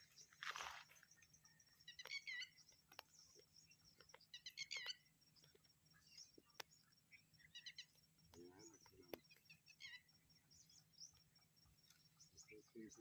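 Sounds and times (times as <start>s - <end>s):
high chirping bird calls: 0.0s - 13.0s.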